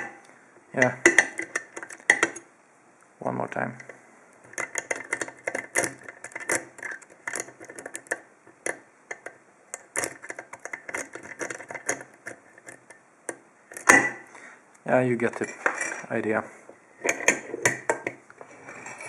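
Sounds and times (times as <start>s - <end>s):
metallic lock picking clicks: 4.5s - 13.9s.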